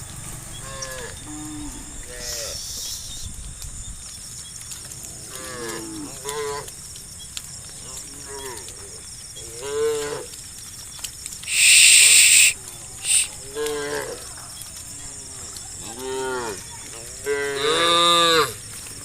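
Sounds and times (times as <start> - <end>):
high insect chirring: 10.6 - 13.6
loud hissing burst: 11.4 - 13.3
cows mooing: 11.5 - 14.2.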